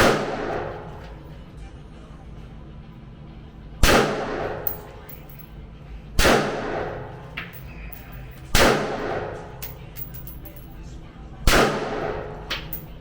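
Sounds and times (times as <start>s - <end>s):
gunshots with ringing echo: 0.0s - 0.8s, 3.8s - 5.4s, 6.2s - 7.8s, 8.5s - 10.4s, 11.5s - 12.9s.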